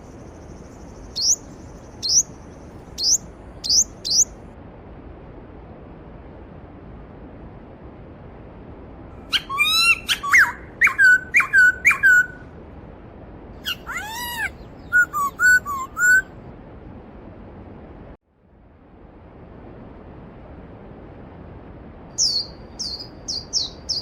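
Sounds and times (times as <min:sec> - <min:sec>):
songbird singing: 0:00.0 - 0:04.4, 0:09.3 - 0:12.4, 0:13.6 - 0:16.3, 0:22.2 - 0:24.0.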